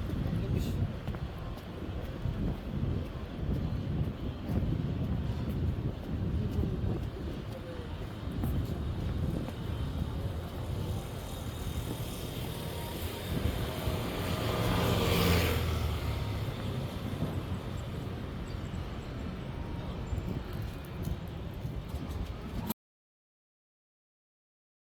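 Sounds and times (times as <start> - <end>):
low traffic rumble: 0.0 - 22.7
vehicle passing close by: 11.7 - 17.7.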